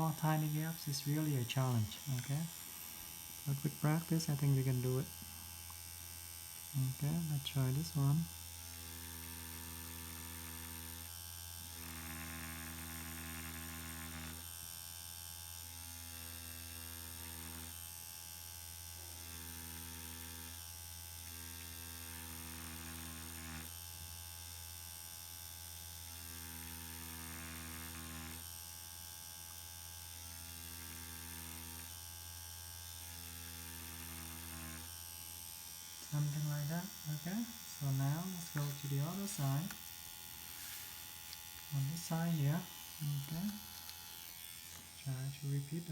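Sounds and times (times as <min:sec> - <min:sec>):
electrical hum: 0:00.0 - 0:14.4, 0:32.9 - 0:45.9
tattoo machine buzzing: 0:00.0 - 0:45.9.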